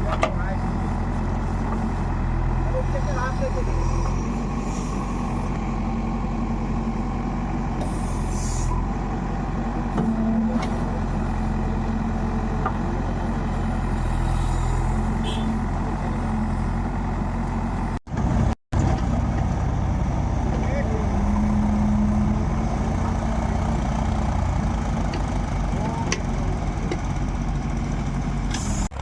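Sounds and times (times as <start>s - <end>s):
diesel engine running: 0.0s - 29.0s.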